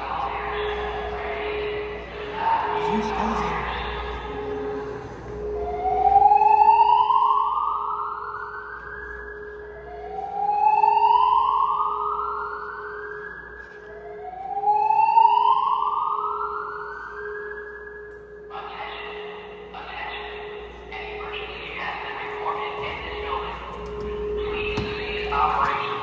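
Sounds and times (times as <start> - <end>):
fire alarm whoop tone: 5.8 - 18.2.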